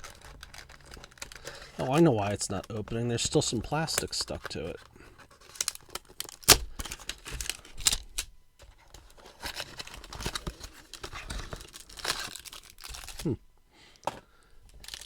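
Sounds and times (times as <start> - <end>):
plastic wrap crinkling and tearing: 0.0 - 8.3, 8.9 - 13.4, 14.8 - 15.0.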